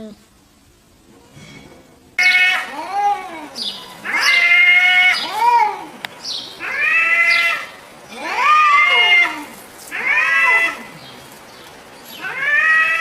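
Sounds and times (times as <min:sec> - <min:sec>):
cat meowing: 0:06.6 - 0:10.9, 0:12.2 - 0:13.0.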